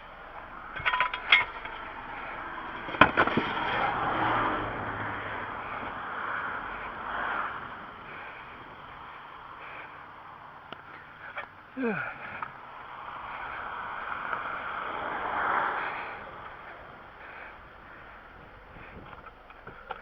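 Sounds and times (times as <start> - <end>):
traffic rushing by: 0.0 - 20.0
rattle of metallic clinks: 0.7 - 2.0.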